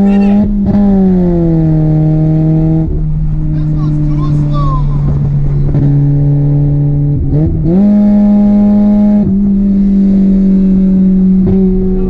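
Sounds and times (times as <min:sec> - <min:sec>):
car engine revving with rod knock: 0:05.0 - 0:12.0.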